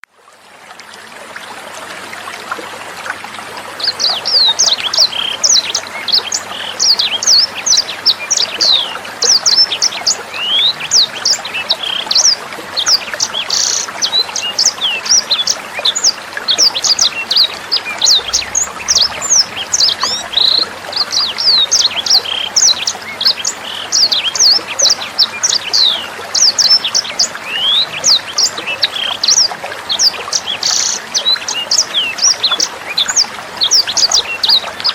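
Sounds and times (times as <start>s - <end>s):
running water trickling: 0.0s - 34.9s
bird singing sharp sweeping notes: 16.8s - 22.8s.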